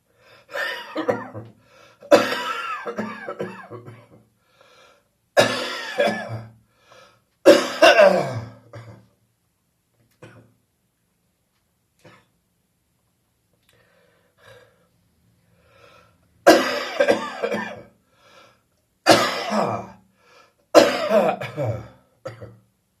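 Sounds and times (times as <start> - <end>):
quiet breaths: 0.0 - 0.6, 1.5 - 2.1, 4.3 - 5.3, 6.6 - 7.4, 13.6 - 16.4, 17.9 - 18.9, 20.0 - 20.7
person coughing: 0.5 - 4.2, 5.4 - 6.5, 7.5 - 9.1, 16.5 - 17.9, 19.1 - 20.0, 20.8 - 22.6.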